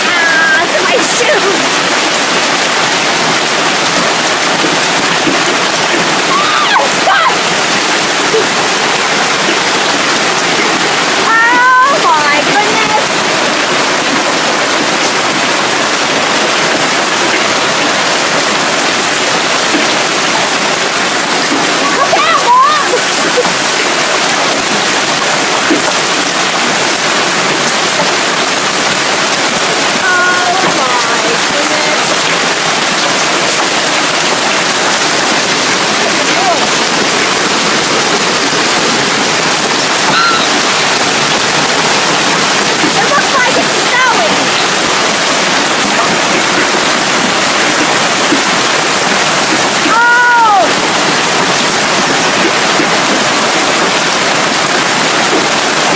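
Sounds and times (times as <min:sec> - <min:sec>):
hail and heavy rain pelting: 0:00.0 - 0:55.9
high chirp: 0:40.1 - 0:40.8.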